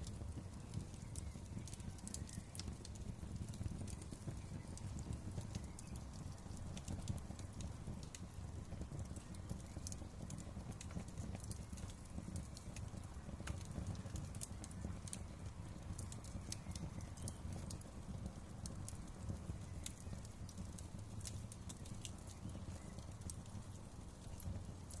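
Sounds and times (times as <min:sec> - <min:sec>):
low rumble of burning: 0:00.0 - 0:25.0
wood fire crackling and popping: 0:00.0 - 0:25.0.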